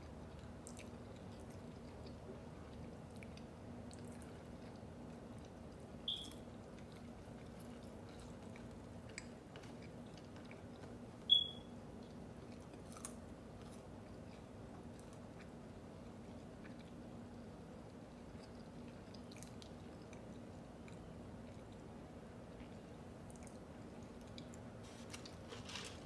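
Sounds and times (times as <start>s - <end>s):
close chewing: 6.6s - 11.0s, 12.0s - 17.0s.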